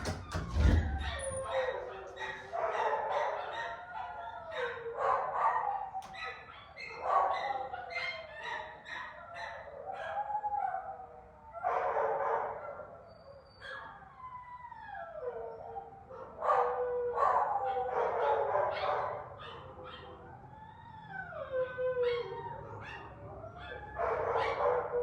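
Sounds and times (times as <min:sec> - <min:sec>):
puppy whining and yelping: 0:03.4 - 0:10.8, 0:13.0 - 0:15.9, 0:18.7 - 0:24.8.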